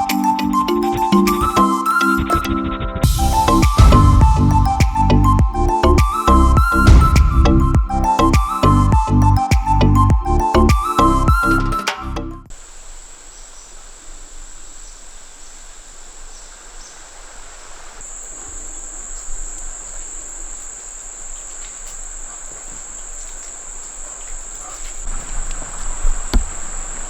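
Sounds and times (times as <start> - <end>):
faint outdoor noise: 0.0 - 27.0
insects trilling: 12.5 - 27.0.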